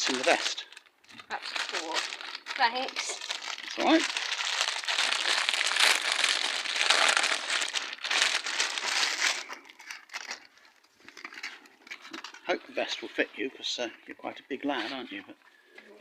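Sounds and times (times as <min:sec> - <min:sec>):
plastic packaging crinkling: 0:00.0 - 0:12.5.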